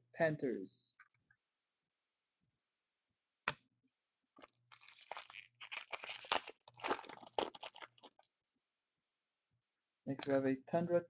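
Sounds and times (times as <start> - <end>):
plastic packaging crinkling: 4.4 - 8.2.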